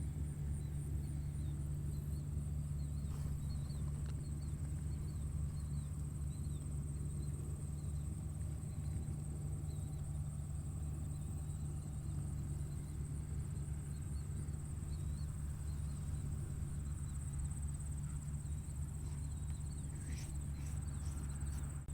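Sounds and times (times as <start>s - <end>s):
tractor engine droning: 0.0s - 21.9s
insect trill: 0.3s - 21.9s
faint small chirps: 14.9s - 21.8s.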